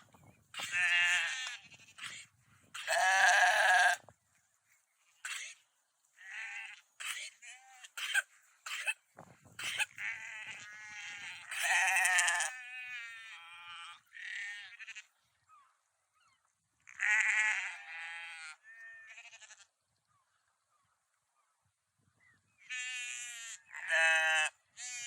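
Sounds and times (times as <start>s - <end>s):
sheep bleating: 0.6s - 4.1s, 6.2s - 9.0s, 9.6s - 15.1s, 16.9s - 19.7s, 22.6s - 25.0s.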